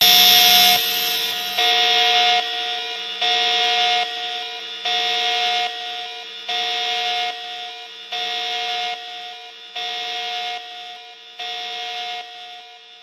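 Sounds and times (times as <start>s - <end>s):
quieter steady tone: 0.0s - 3.2s
pulsing electronic alarm tone: 0.0s - 5.8s.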